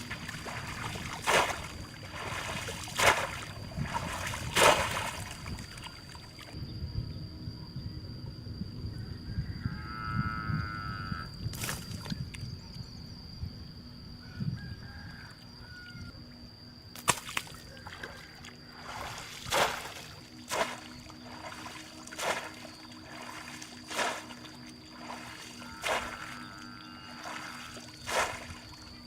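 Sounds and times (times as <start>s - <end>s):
water splashing: 0.0s - 6.6s, 18.8s - 29.0s.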